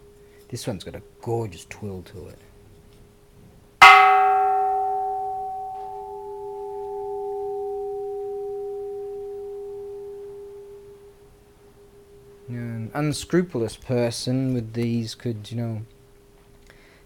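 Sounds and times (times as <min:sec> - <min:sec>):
temple bell ringing: 0:03.8 - 0:11.0.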